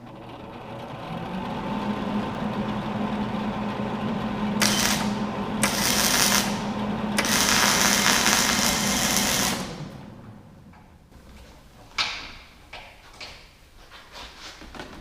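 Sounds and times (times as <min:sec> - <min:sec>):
low welder hum: 0:00.0 - 0:11.5
welder arc crackling and sizzling: 0:04.6 - 0:10.2.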